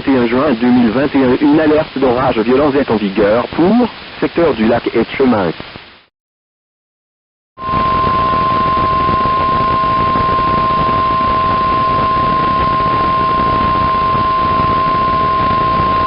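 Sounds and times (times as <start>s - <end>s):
radio hiss: 0.0s - 6.1s
faint lower tone: 7.6s - 16.0s
steady high alarm tone: 7.6s - 16.0s.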